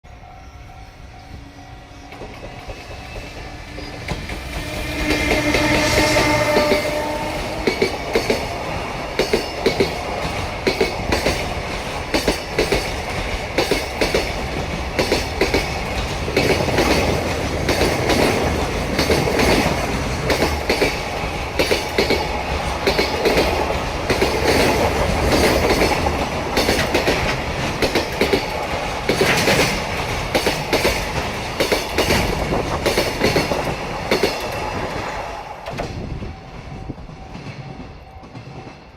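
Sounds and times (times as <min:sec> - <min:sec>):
train wheels clattering over rail joints: 0:02.2 - 0:38.9.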